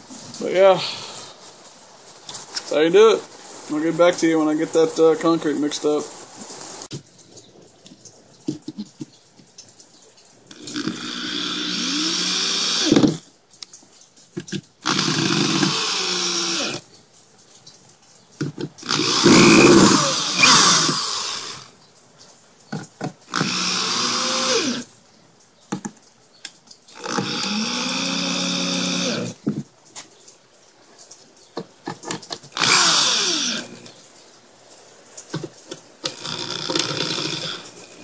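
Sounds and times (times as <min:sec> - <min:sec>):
power drill driving screws: 0:10.5 - 0:13.2, 0:14.8 - 0:16.8, 0:18.8 - 0:21.7, 0:23.3 - 0:24.9, 0:26.9 - 0:29.4, 0:32.5 - 0:33.9, 0:36.0 - 0:38.0.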